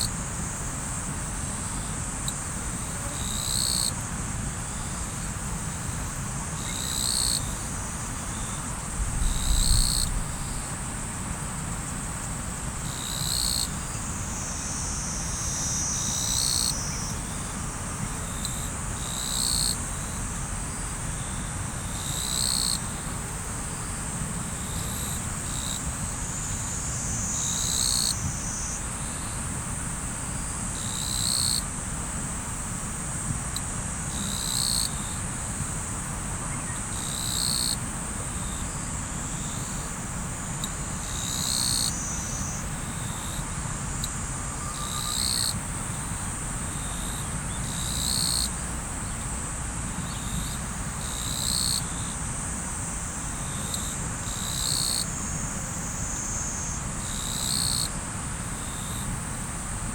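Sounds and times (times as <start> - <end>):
high insect trill: 0.0 - 59.9.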